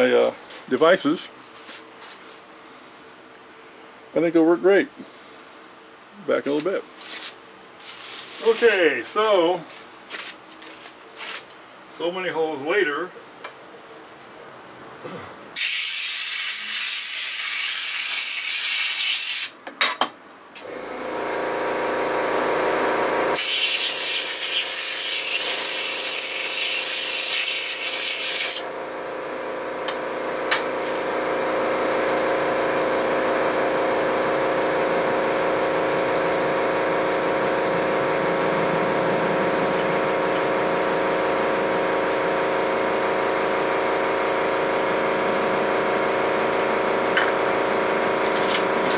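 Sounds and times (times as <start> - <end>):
loud hissing bursts: 15.6 - 19.6, 23.4 - 28.7
power tool motor running: 20.6 - 48.9.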